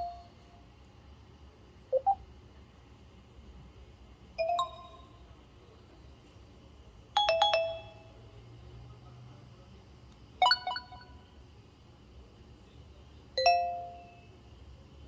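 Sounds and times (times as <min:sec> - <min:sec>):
phone alert chimes: 0:07.2 - 0:08.1, 0:10.4 - 0:11.1.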